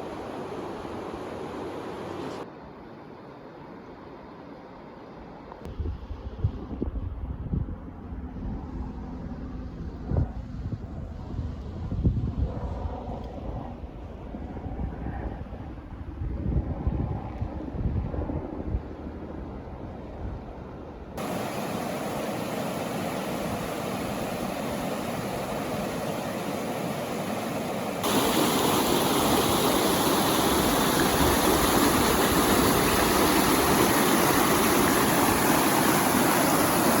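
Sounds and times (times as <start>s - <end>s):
white water rushing: 21.2s - 37.0s.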